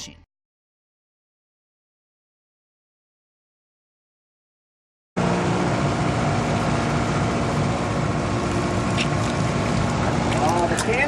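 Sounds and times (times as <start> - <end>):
boat engine running: 5.2 - 11.0.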